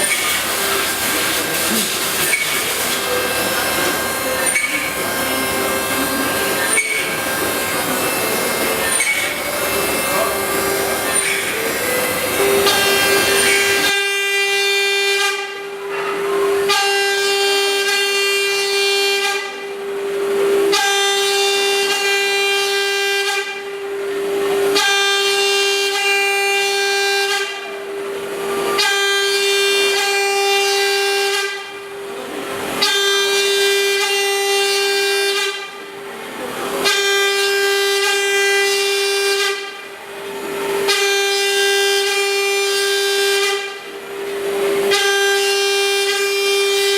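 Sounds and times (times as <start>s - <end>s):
spindle whine: 0.0s - 13.9s
cutter ringing cutting whine: 0.0s - 46.9s.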